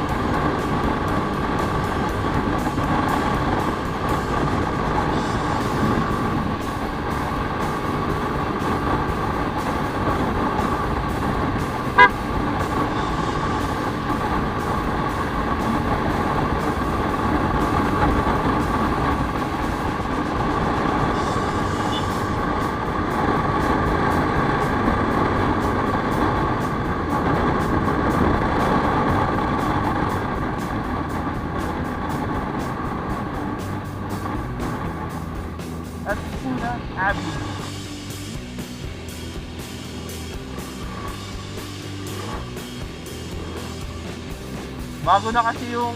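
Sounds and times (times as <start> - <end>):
wind rush: 0.0 - 45.3
scooter engine drone: 0.0 - 45.9
short horn toot: 11.9 - 12.3, 21.3 - 22.3.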